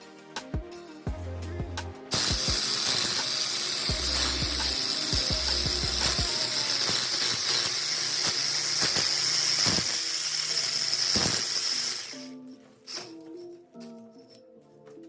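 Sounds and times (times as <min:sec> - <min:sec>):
background music: 0:00.0 - 0:15.0
core drill boring through wall: 0:02.1 - 0:12.2.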